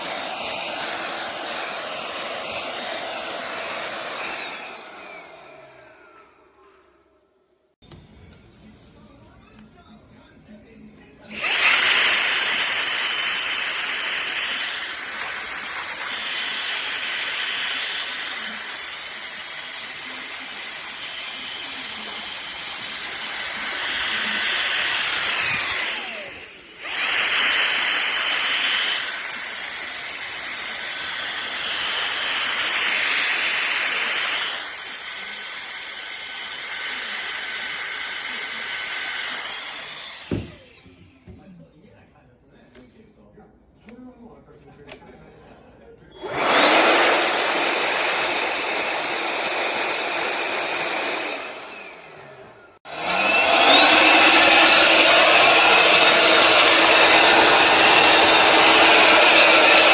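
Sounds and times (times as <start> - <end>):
blower whine spinning down: 0.0 - 6.6, 46.2 - 59.9
cordless blower running: 0.0 - 7.0, 11.2 - 41.1, 46.2 - 59.9.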